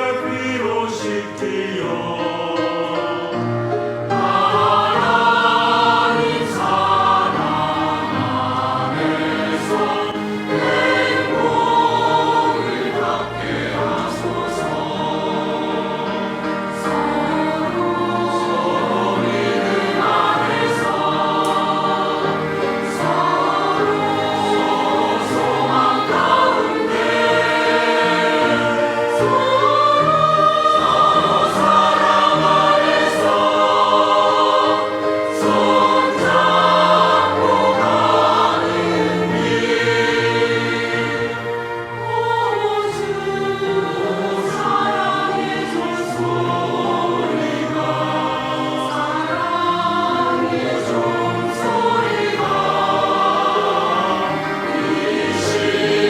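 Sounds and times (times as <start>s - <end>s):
church choir singing a hymn: 0.0s - 56.0s.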